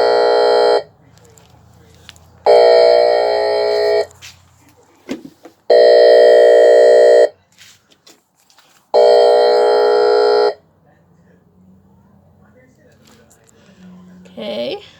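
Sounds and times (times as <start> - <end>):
harsh siren tone blasts: 0.0 - 0.9, 2.5 - 4.1, 9.0 - 10.6.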